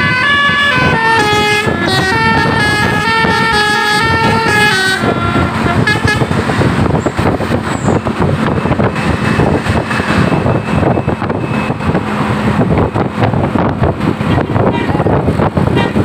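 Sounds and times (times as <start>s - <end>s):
musical bus horn: 0.0s - 7.0s, 14.2s - 16.0s
passing bus: 0.0s - 16.0s
road traffic: 0.0s - 16.0s.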